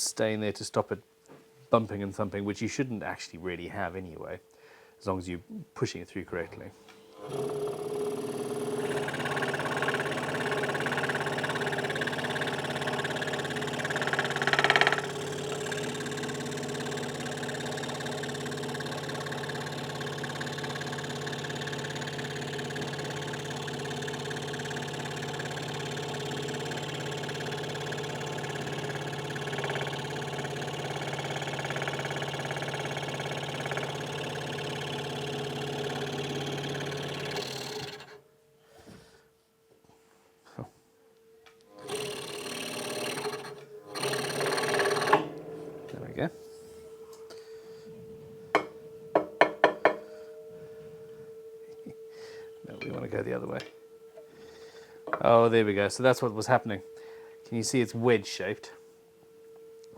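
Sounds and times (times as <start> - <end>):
scroll saw cutting wood: 7.0 - 38.2, 41.8 - 46.0.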